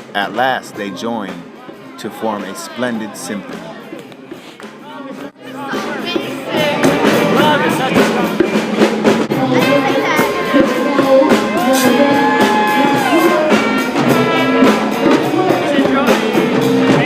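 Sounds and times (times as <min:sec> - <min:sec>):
drum kit beat: 0:00.0 - 0:17.0.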